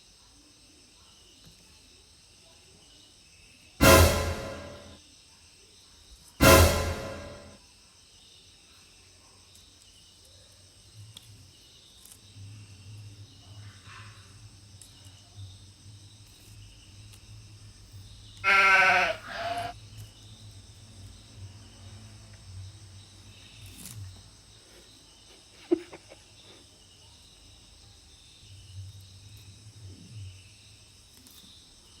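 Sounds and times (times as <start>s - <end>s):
sharp click: 3.8s - 5.0s, 6.4s - 7.6s.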